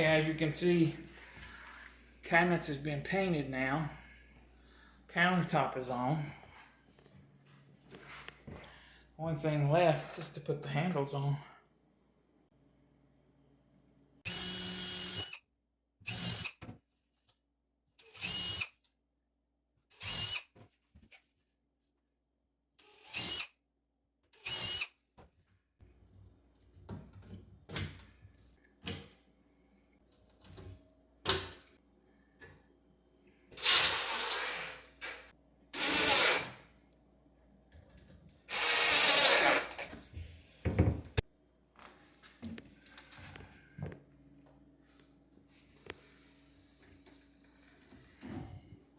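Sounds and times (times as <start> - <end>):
power drill whining: 14.3 - 15.4, 16.1 - 16.5, 18.0 - 18.7, 19.9 - 20.5, 22.8 - 23.5, 24.4 - 24.9, 35.8 - 36.6, 38.5 - 39.9.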